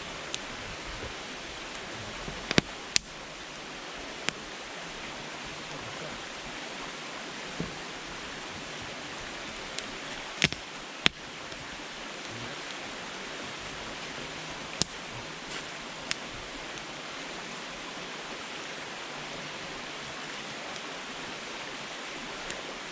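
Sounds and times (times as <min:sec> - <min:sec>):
campfire flames hissing: 0:00.0 - 0:22.9
firewood crackling pops: 0:01.7 - 0:03.2, 0:04.2 - 0:04.5, 0:09.5 - 0:11.6, 0:14.8 - 0:16.9.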